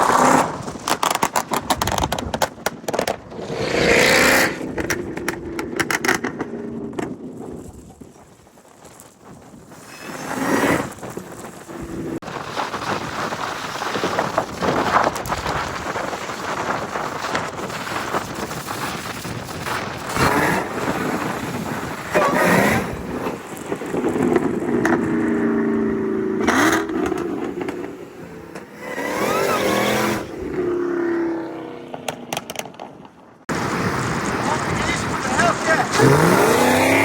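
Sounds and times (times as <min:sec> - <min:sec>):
wind noise on microphone: 0:00.0 - 0:32.7
car engine: 0:02.5 - 0:08.1, 0:20.1 - 0:37.0.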